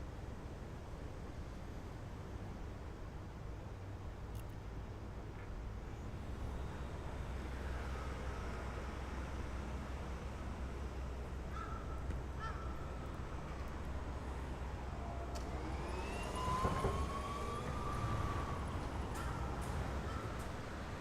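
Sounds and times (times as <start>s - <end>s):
distant siren: 11.9s - 21.0s.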